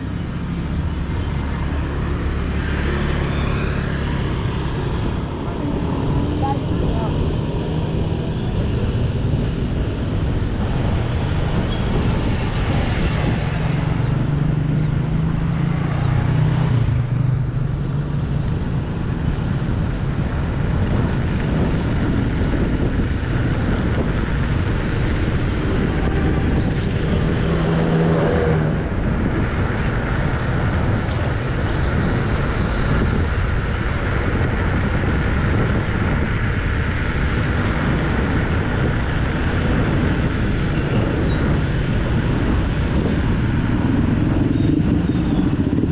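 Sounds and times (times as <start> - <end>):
traffic noise: 0.0 - 45.9
bicycle tyres rolling on road: 15.2 - 45.9.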